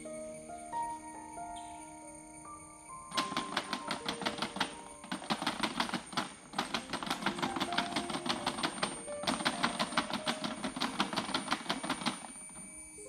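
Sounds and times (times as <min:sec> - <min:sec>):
music with fast ticking beat: 0:02.9 - 0:13.0.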